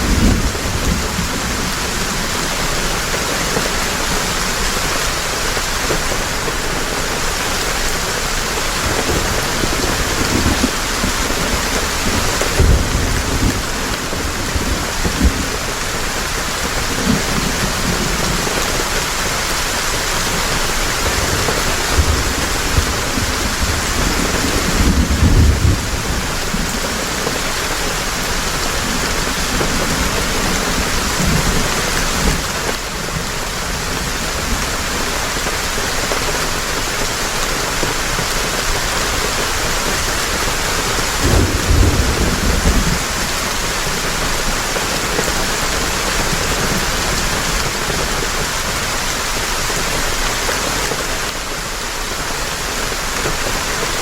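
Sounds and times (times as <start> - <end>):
thunder rumbling: 0.0 - 36.1, 40.3 - 48.8
heavy rain falling: 0.0 - 54.0.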